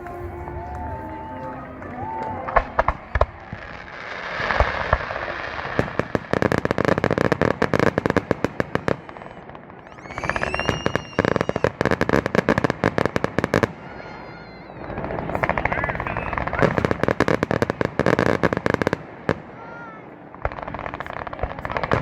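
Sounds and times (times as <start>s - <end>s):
fireworks crackling pops: 0.0s - 22.0s
firework whistles: 8.8s - 22.0s.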